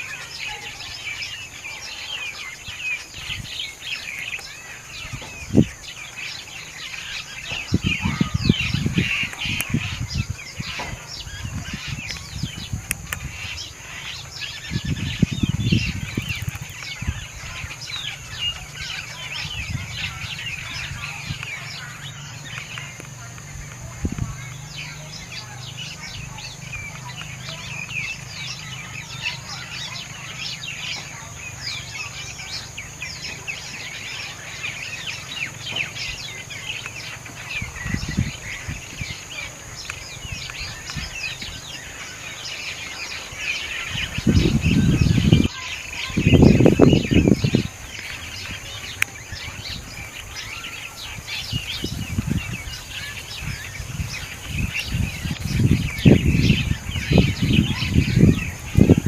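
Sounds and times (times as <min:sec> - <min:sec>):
small birds chirping: 0:00.0 - 0:59.0.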